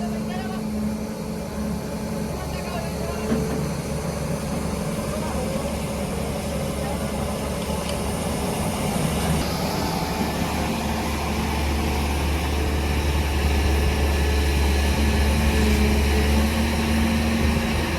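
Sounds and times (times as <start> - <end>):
heavy diesel engine running: 0.0 - 17.9.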